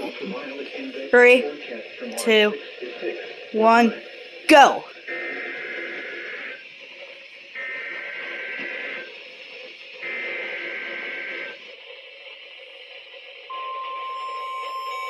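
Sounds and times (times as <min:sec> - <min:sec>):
receiver hiss: 0:00.0 - 0:15.0
digital data bursts of high tones: 0:13.5 - 0:15.0.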